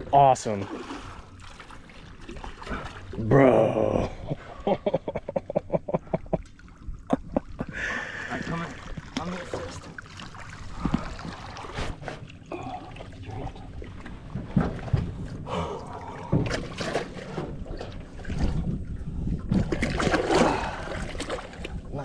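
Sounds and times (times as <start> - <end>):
water splashing and dripping: 6.3 - 22.0
knocks and thumps on boat: 13.3 - 21.9.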